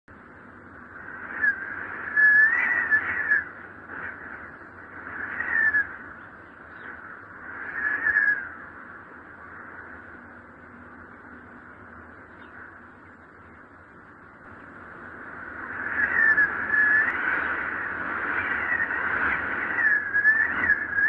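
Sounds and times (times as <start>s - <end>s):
wind gusting with howling whistle: 0.1s - 21.0s.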